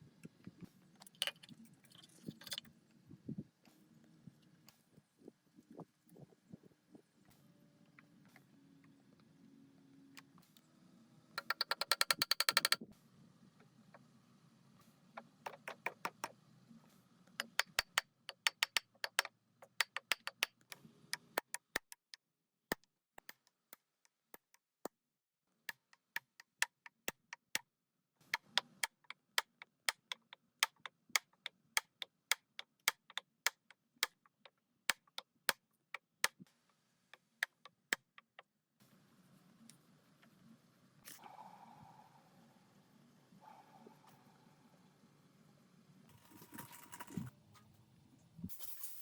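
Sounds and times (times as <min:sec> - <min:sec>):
sharp taps and clicks: 0:17.4 - 0:23.5.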